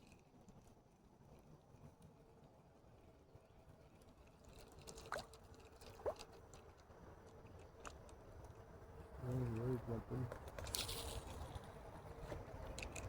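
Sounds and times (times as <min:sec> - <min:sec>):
faint water plops: 0:04.9 - 0:06.8.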